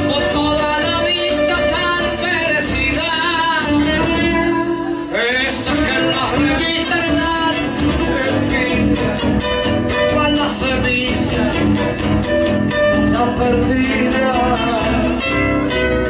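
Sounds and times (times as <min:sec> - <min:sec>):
folk music on acoustic guitar: 0:00.0 - 0:16.0
person singing: 0:00.0 - 0:16.0.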